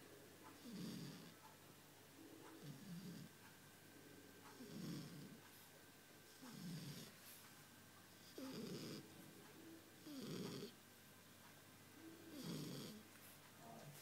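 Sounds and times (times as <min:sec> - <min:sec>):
puppy snoring: 0:00.4 - 0:01.4, 0:02.4 - 0:03.4, 0:04.4 - 0:05.5, 0:06.2 - 0:07.2, 0:08.1 - 0:09.2, 0:10.0 - 0:10.8, 0:12.1 - 0:13.1.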